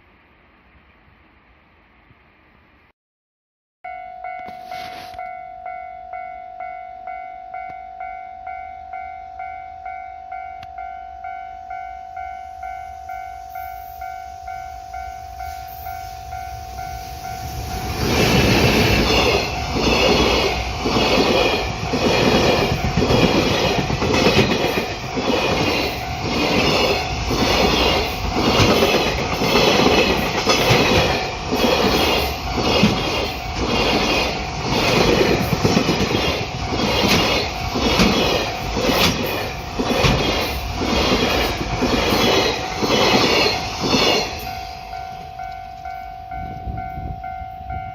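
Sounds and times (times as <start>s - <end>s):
level-crossing warning bell: 3.8s - 47.9s
train wheels clattering over rails: 17.8s - 44.5s.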